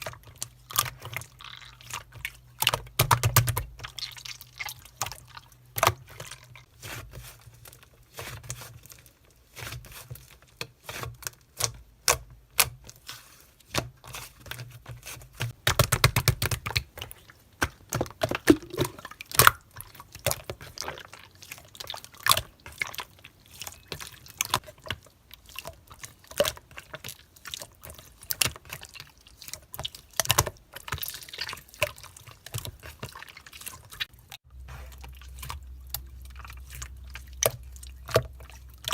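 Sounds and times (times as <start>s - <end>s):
slime sticky wet clicks: 18.5s - 19.0s.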